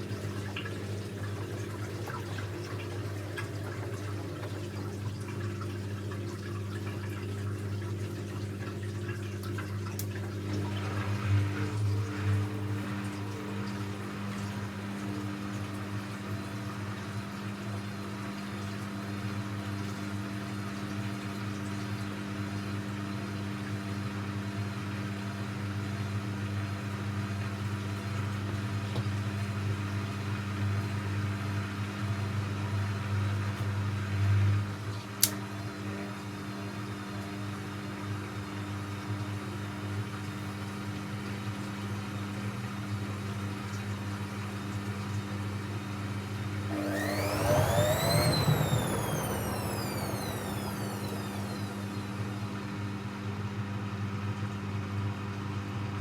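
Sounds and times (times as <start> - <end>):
washing machine humming: 0.0 - 19.0, 46.6 - 53.3.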